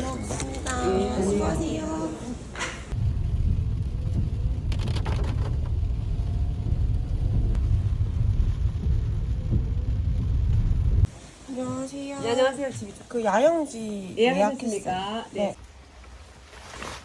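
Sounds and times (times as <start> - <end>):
car driving rumble: 2.8 - 11.1.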